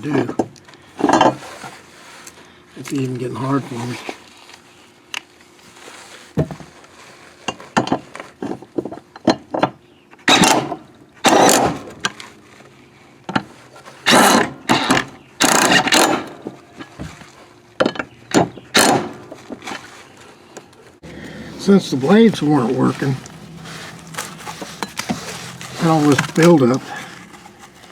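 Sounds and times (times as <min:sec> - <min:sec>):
mechanical rattling and scraping: 0:00.0 - 0:04.8, 0:05.5 - 0:27.9.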